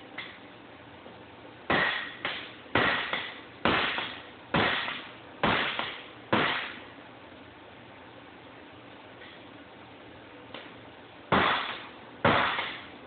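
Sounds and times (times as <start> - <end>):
hammer striking metal tube: 1.7 - 6.8.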